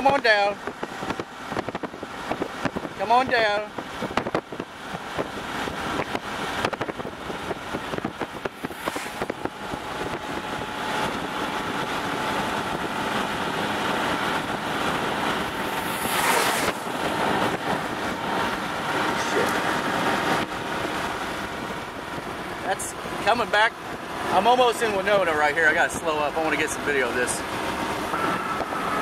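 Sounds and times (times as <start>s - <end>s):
car road and wind noise: 0.0s - 29.0s.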